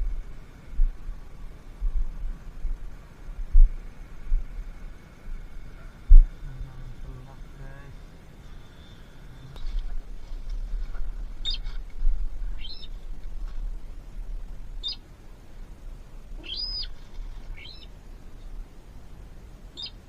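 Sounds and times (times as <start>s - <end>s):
low rumble of wind: 0.0s - 20.0s
small bird chirping: 11.3s - 13.1s, 14.8s - 15.0s, 16.3s - 18.6s, 19.7s - 20.0s.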